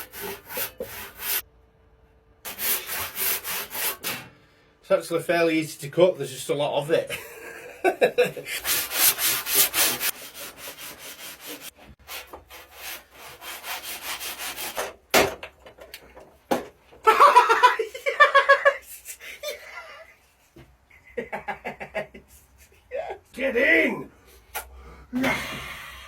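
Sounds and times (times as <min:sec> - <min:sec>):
handsaw cutting log: 0:00.0 - 0:01.4, 0:02.5 - 0:04.3, 0:08.5 - 0:15.0.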